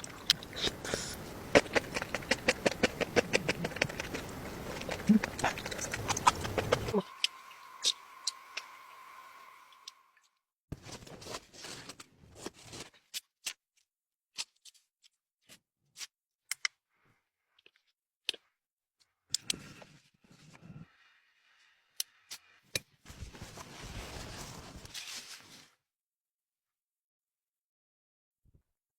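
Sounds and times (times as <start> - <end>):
faint steady tone: 5.1 - 10.2.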